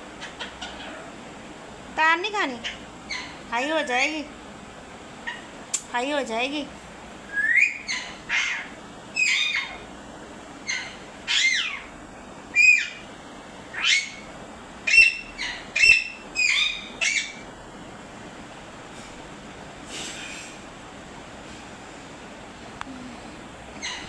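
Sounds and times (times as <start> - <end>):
parrot squawking: 0.1 - 1.1, 2.5 - 4.3, 5.2 - 5.5, 7.4 - 9.9, 10.6 - 13.1, 13.7 - 17.4, 23.8 - 24.0.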